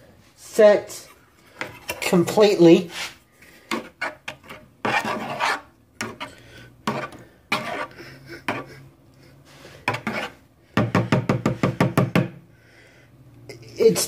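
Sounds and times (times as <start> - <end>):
spoon scraping a bowl: 1.0 - 8.8, 9.8 - 10.4.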